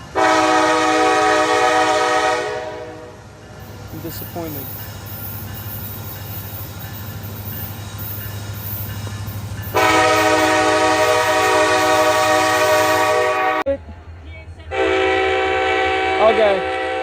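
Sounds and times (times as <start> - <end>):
passing train rumble: 0.0 - 17.0
locomotive air horn chord: 0.1 - 3.2, 9.7 - 13.7, 14.7 - 17.0.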